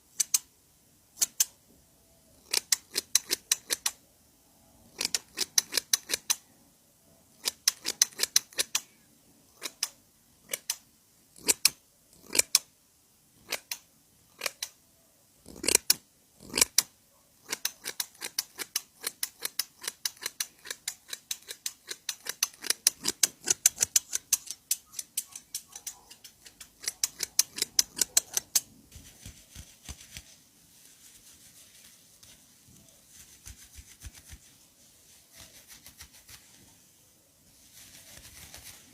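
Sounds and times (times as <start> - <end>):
scissors snipping hair: 2.4 - 4.0, 5.0 - 6.4, 7.4 - 8.9, 15.5 - 30.2.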